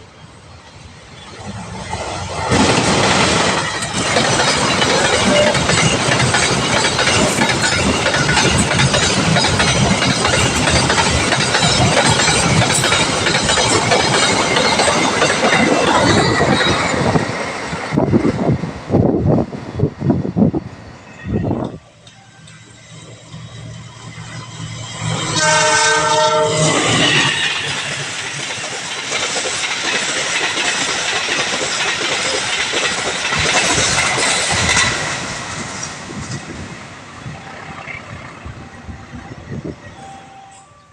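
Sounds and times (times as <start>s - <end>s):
train wheels clattering over rails: 1.4s - 19.5s, 26.7s - 37.5s.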